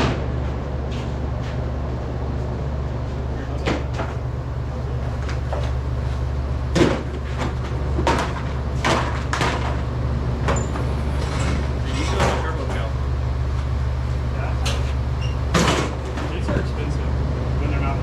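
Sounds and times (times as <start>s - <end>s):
steady low hum: 0.4s - 18.0s
clunks and knocks: 3.6s - 16.8s.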